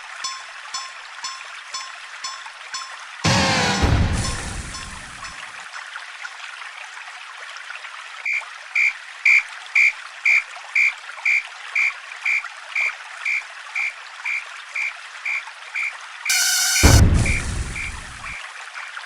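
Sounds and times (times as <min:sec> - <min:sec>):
level crossing warning bell: 0:00.0 - 0:03.6, 0:04.2 - 0:05.4.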